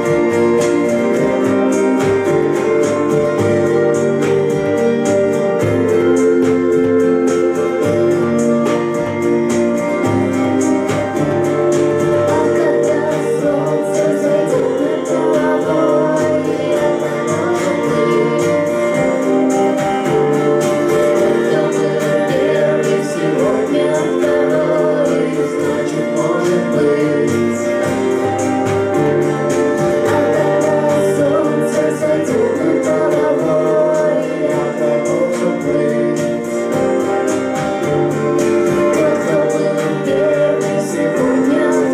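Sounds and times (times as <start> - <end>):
live band playing: 0.0 - 41.9
person singing: 0.0 - 41.9
sustained keyboard chords: 0.0 - 41.9.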